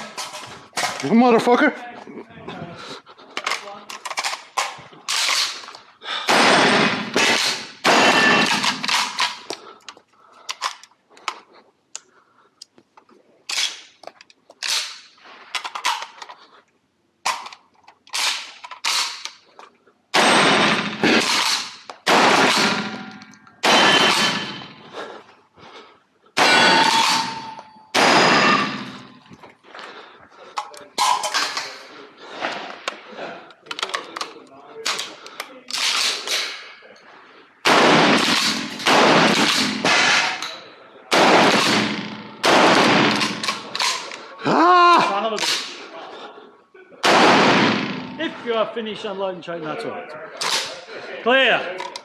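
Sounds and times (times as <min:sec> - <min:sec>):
shotgun shots echoing: 0:06.3 - 0:09.5, 0:20.1 - 0:24.9, 0:26.4 - 0:29.1, 0:37.6 - 0:40.5, 0:41.1 - 0:44.1, 0:47.0 - 0:48.4.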